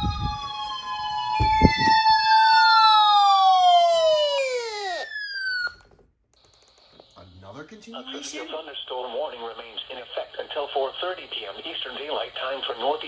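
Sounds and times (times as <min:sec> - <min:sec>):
low thumps: 0:00.0 - 0:00.5, 0:01.4 - 0:02.2
siren-like electronic tones: 0:00.0 - 0:05.8.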